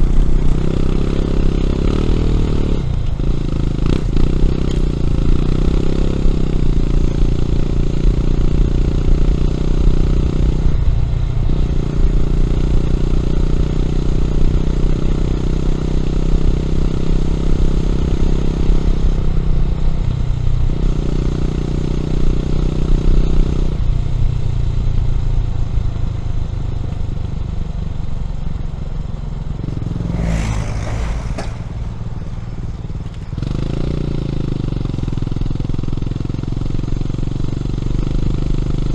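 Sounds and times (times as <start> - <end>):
motorcycle engine running under load: 0.0 - 38.9
brief whoosh: 29.7 - 33.4.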